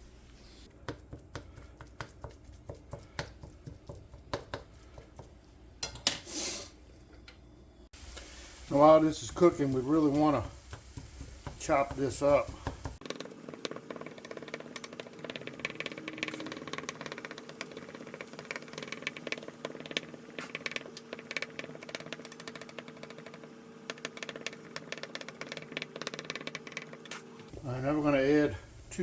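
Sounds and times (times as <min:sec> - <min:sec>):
knife chopping on cutting board: 0:00.8 - 0:05.4, 0:09.5 - 0:13.1
fan humming: 0:06.8 - 0:29.0.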